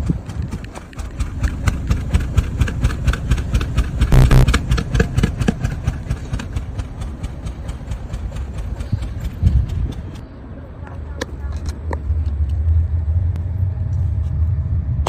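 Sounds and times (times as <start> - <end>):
car engine idling: 0.1 - 10.2.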